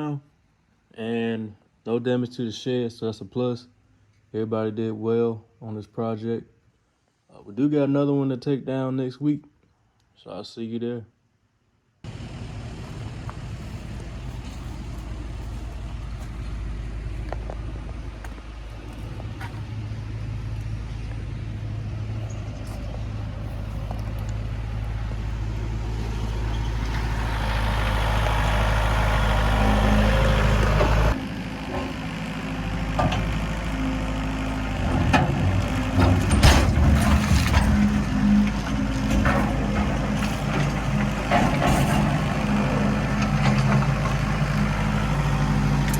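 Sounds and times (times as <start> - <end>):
large engine running: 12.1 - 45.9.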